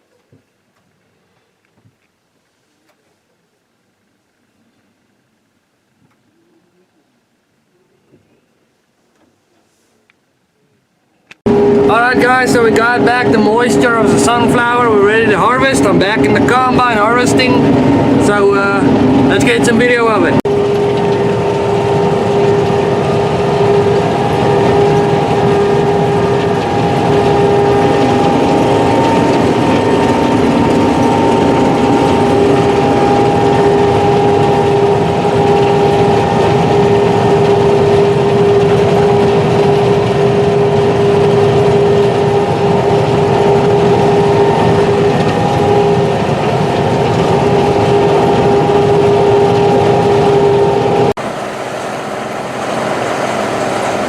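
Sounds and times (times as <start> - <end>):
combine harvester machinery drone: 11.4 - 54.0.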